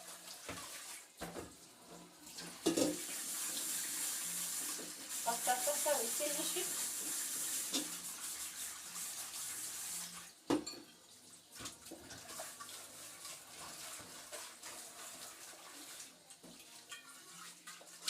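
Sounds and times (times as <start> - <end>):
tap running into sink: 0.4 - 3.7
dishes clinking: 2.6 - 3.1, 10.5 - 11.1, 16.5 - 17.3
dishware clank: 10.5 - 11.0.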